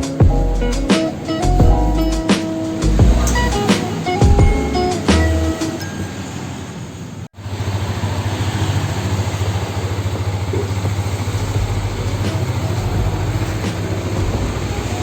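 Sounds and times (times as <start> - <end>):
motorcycle engine idling: 7.4 - 15.0.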